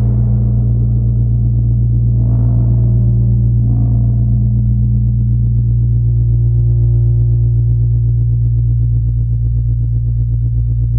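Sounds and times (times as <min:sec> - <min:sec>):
deep synthesized drone: 0:00.0 - 0:10.9.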